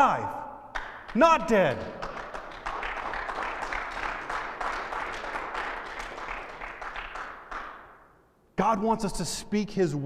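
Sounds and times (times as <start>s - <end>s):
crowd applauding: 0.8s - 8.0s.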